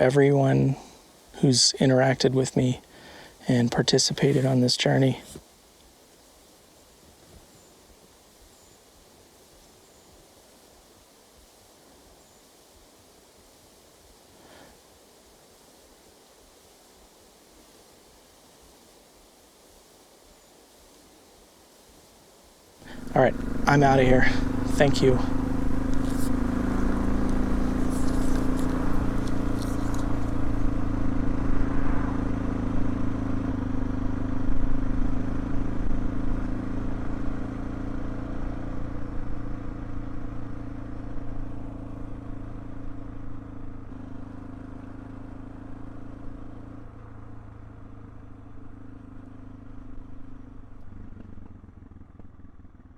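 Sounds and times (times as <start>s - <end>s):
car engine running: 22.8s - 52.9s.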